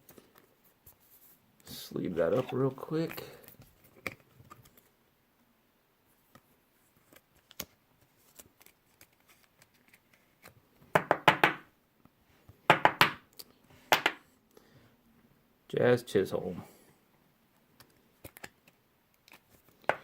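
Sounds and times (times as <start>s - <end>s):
plastic sleeve scraping rustles: 0.9s - 4.8s.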